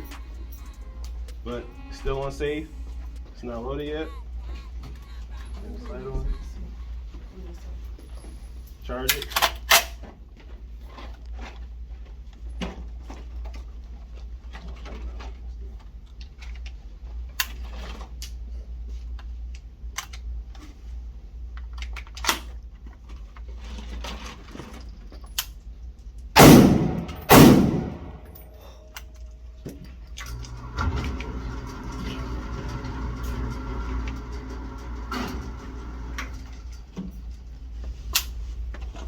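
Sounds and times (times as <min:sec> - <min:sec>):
gun handling clicks: 0:09.1 - 0:10.0
loud gunshots: 0:26.4 - 0:28.4.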